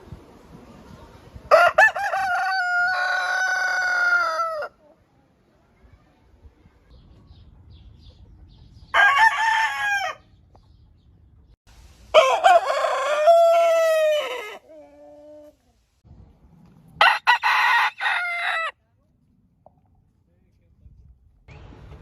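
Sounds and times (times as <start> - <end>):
rooster crowing: 1.5 - 4.8, 8.9 - 10.3, 12.1 - 14.7, 17.0 - 18.8.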